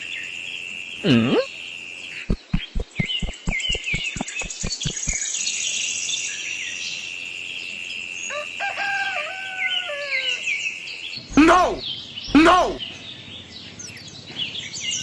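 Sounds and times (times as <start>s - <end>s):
birds chirping: 2.1s - 5.4s, 11.2s - 15.0s
rapid even knocks: 2.3s - 5.2s.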